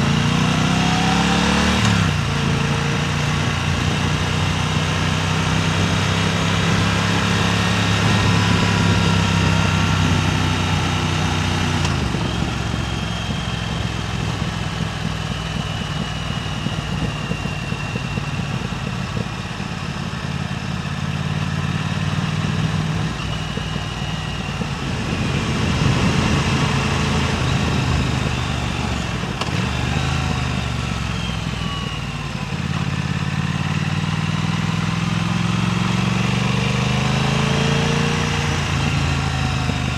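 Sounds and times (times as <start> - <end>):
motorcycle engine running: 0.0 - 39.9
wind rush over microphone: 22.6 - 30.5.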